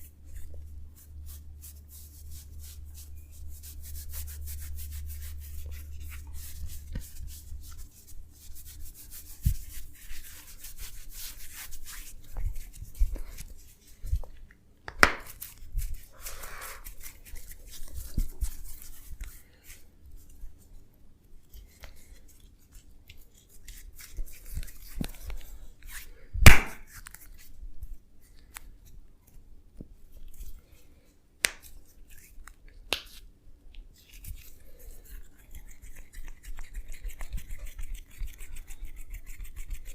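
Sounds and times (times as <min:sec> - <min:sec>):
hands rubbing hair and skin: 0:00.0 - 0:20.8, 0:21.4 - 0:30.8, 0:31.4 - 0:39.9
sharp cracks and snaps: 0:14.8 - 0:15.4, 0:26.4 - 0:27.2.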